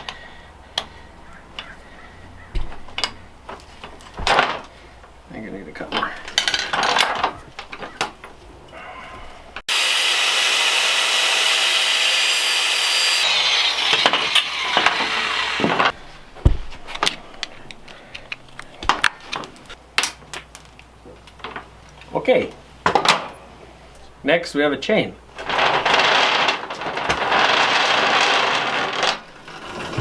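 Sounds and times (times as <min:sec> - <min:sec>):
power tool grinding chain: 0:09.7 - 0:15.9, 0:27.4 - 0:30.0.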